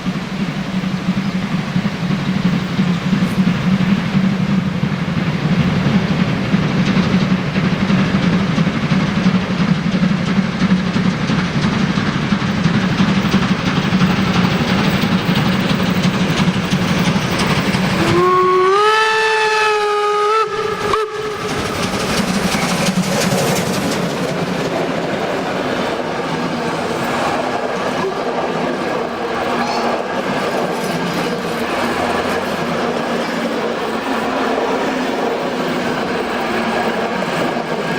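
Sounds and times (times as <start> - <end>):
steam train rumble and rail clatter: 0.0 - 37.9
steam whistle: 18.0 - 21.7.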